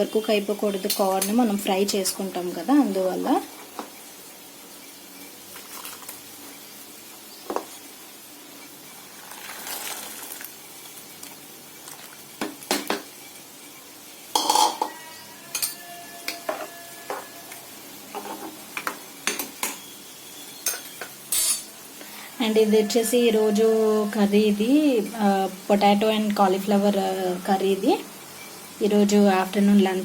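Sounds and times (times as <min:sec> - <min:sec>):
metal cookware clinking and clattering: 0:14.3 - 0:17.3, 0:18.1 - 0:19.8, 0:20.6 - 0:21.7
ringing metal tones: 0:14.4 - 0:17.5.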